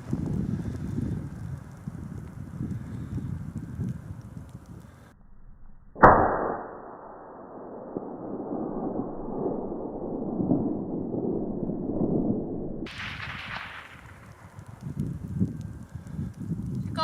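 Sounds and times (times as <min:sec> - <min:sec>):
gunshot echo: 0:06.0 - 0:09.3, 0:12.9 - 0:14.8
suppressed rifle shot: 0:06.0 - 0:10.6, 0:12.9 - 0:15.1.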